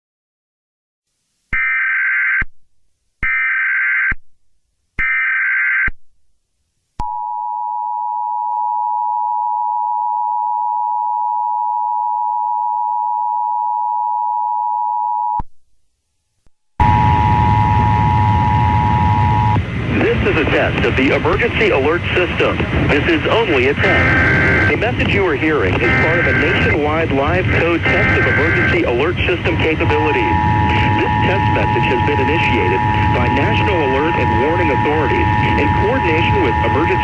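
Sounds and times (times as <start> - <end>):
two-tone alarm: 3.2 - 4.2, 16.8 - 19.6, 23.5 - 24.8, 25.8 - 26.8, 27.5 - 37.0
digital data bursts: 22.9 - 37.0.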